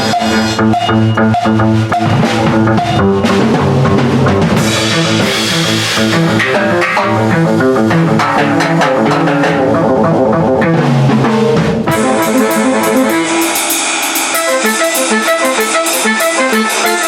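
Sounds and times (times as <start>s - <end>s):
rock music: 0.0s - 17.0s
quick cymbal strikes: 11.9s - 17.0s.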